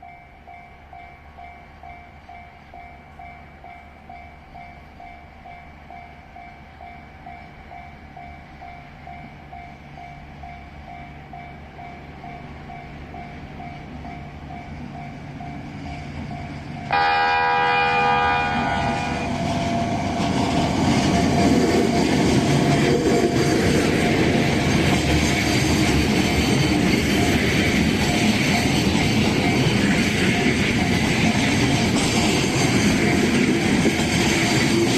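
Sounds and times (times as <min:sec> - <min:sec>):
level crossing warning bell: 0:00.0 - 0:20.2, 0:25.7 - 0:31.8
train running noise: 0:00.0 - 0:34.9
train horn: 0:16.9 - 0:20.3.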